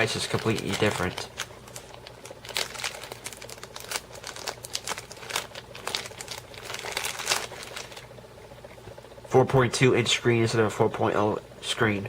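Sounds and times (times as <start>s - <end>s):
plastic packaging crinkling: 0.0s - 8.2s.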